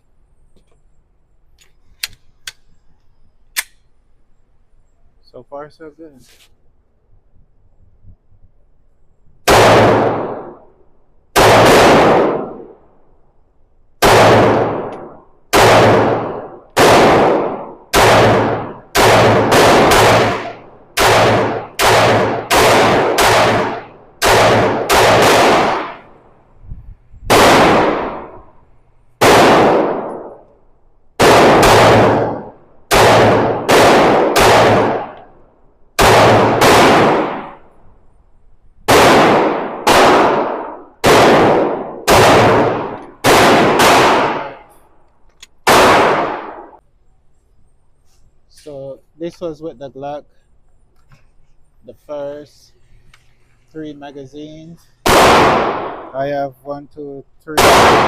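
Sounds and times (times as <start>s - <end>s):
pistol shots echoing: 9.4s - 10.7s, 11.3s - 12.8s, 14.0s - 26.2s, 27.3s - 28.6s, 29.2s - 30.5s, 31.2s - 35.4s, 36.0s - 37.7s, 38.9s - 44.7s, 45.6s - 46.8s, 55.0s - 56.5s, 57.6s - 58.0s.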